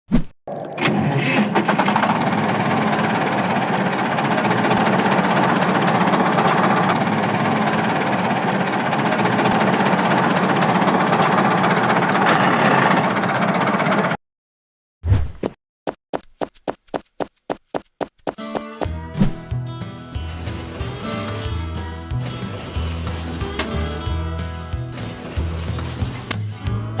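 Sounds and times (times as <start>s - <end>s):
small motor running: 4.2s - 13.8s
dense mechanical noise: 20.2s - 26.4s.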